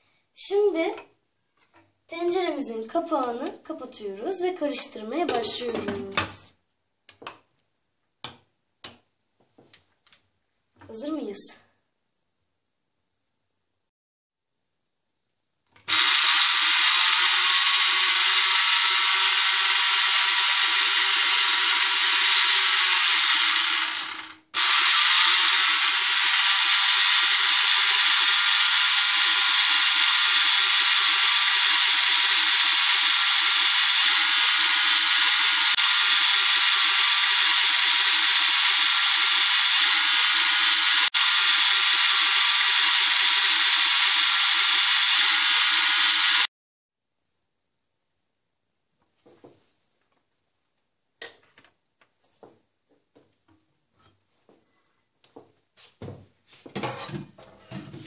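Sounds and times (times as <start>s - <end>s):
small electric motor whirring: 15.9s - 46.5s.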